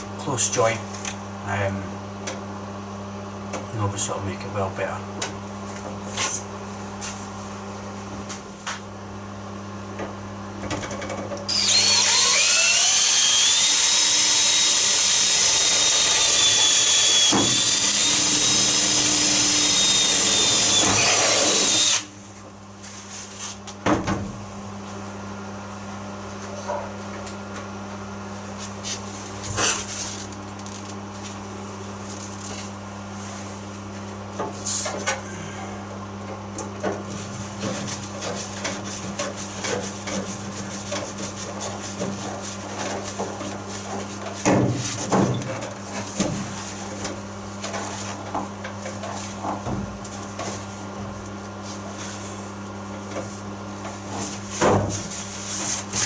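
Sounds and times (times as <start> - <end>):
power drill boring through steel: 11.5 - 22.0
steady low hum: 16.5 - 56.0.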